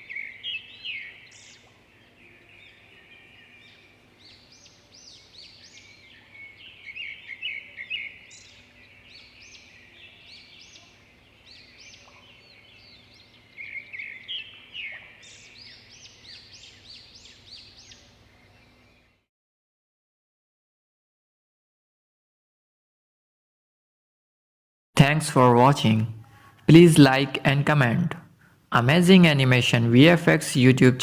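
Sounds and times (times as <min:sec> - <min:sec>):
birds chirping: 0:00.0 - 0:19.3.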